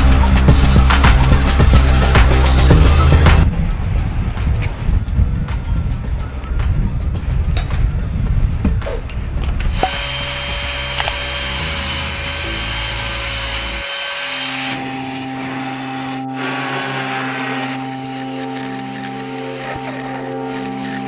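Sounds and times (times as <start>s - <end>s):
power saw cutting concrete: 9.7s - 21.0s.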